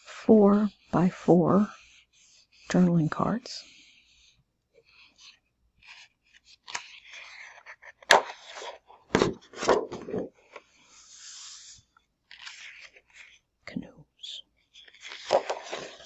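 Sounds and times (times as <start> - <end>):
paper rustling and sliding: 4.8 - 13.5, 14.6 - 16.0
paper tap: 15.1 - 16.0.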